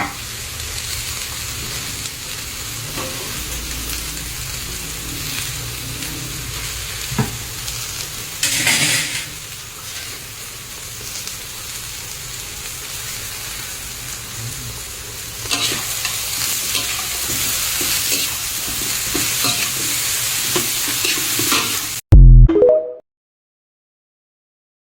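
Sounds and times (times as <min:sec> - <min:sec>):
meat sizzling in a pan: 0:00.0 - 0:22.0
utensil scraping a pan: 0:08.4 - 0:10.3, 0:15.5 - 0:19.9.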